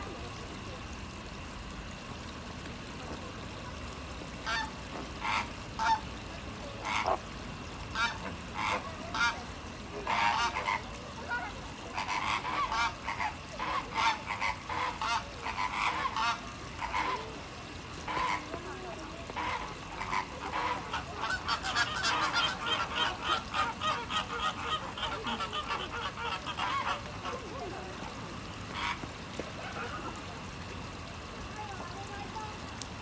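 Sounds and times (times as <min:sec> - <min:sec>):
flamingos honking: 0:04.4 - 0:06.1, 0:06.7 - 0:17.4, 0:18.0 - 0:28.0, 0:28.7 - 0:30.4.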